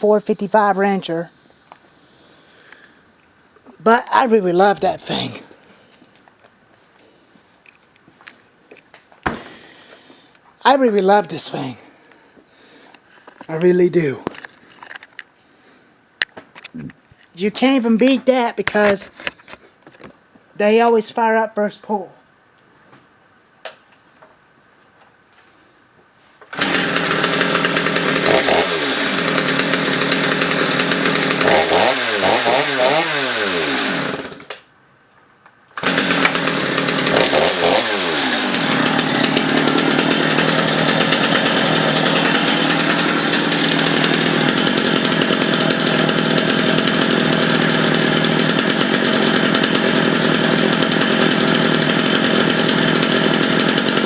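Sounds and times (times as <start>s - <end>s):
chainsaw engine revving: 0.0s - 5.7s, 26.5s - 34.6s, 35.8s - 54.0s.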